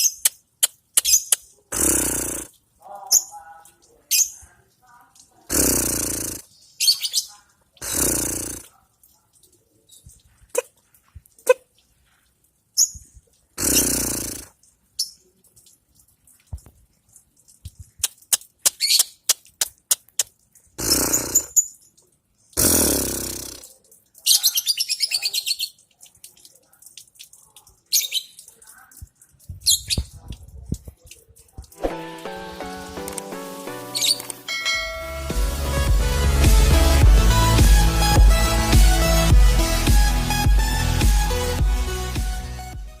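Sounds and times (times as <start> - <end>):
lovebird chirping: 33.8 - 35.3.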